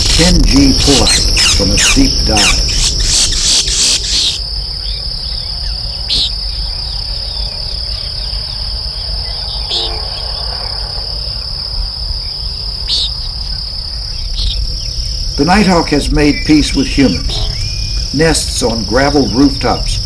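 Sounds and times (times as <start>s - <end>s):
bird giving nasal calls: 0.0s - 4.5s
high-pitched insect chorus: 0.0s - 20.0s.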